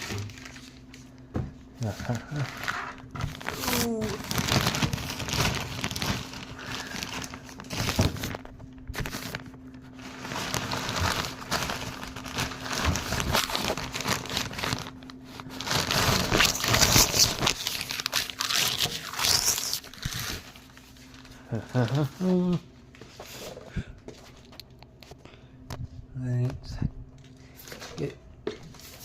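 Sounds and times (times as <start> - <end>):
crinkling and rustling: 0.0 - 26.6, 27.2 - 29.0
steady low hum: 0.0 - 29.0.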